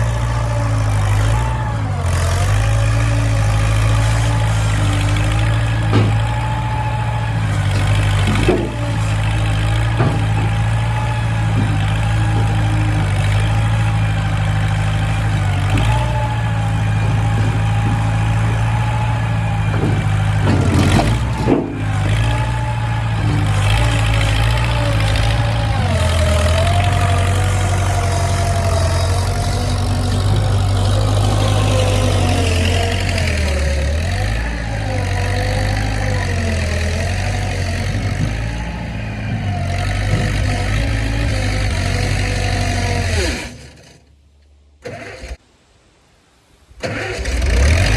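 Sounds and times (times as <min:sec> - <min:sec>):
skid steer loader engine running: 0:00.0 - 0:45.4, 0:46.8 - 0:47.9
knocks: 0:05.4 - 0:06.6, 0:07.6 - 0:13.4, 0:15.3 - 0:33.6.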